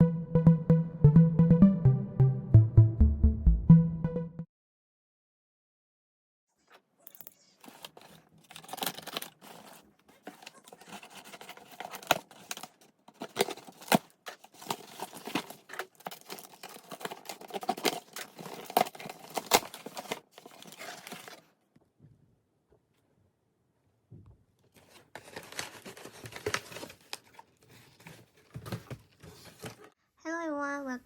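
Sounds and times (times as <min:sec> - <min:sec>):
packaging rustling and crinkling: 0:07.6 - 0:21.5, 0:24.7 - 0:30.0.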